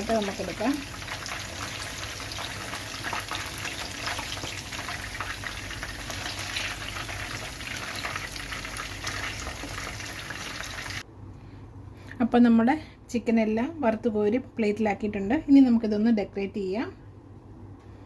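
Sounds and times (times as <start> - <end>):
chicken frying in oil: 0.0 - 11.0.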